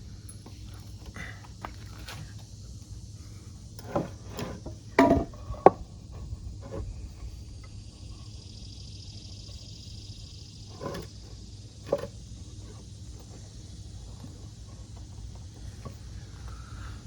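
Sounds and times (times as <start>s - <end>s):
wooden lumber knocking and clattering: 3.8s - 7.7s.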